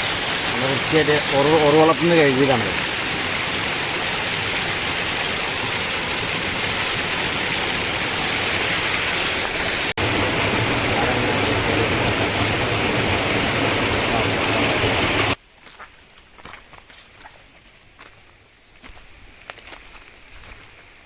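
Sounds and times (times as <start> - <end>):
stream flowing: 0.0 - 15.4.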